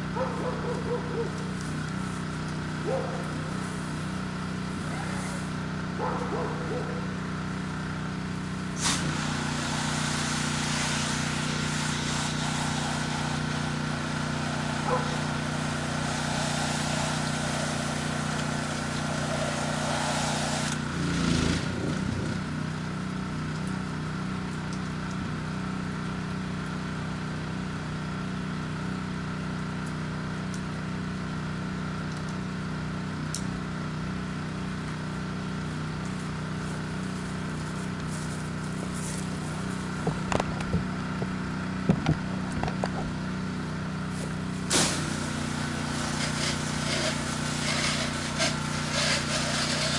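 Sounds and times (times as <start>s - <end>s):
engine running steadily: 0.0s - 49.9s
hiss: 8.8s - 20.8s, 44.6s - 49.9s.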